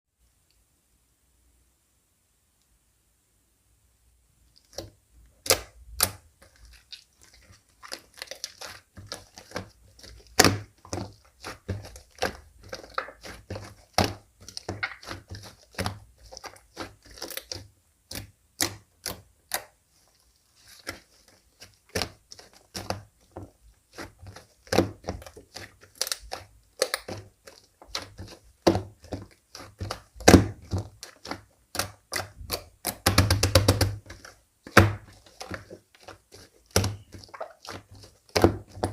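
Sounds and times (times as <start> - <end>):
slime squishing and popping: 4.6 - 19.8, 20.6 - 38.9.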